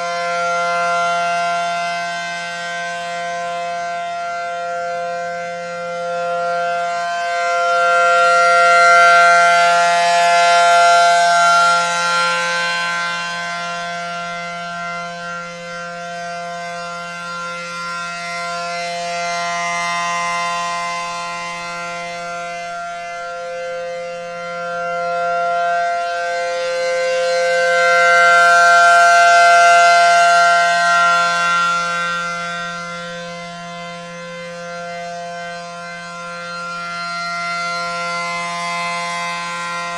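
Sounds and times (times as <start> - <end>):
rotating warning siren: 0.0 - 39.9.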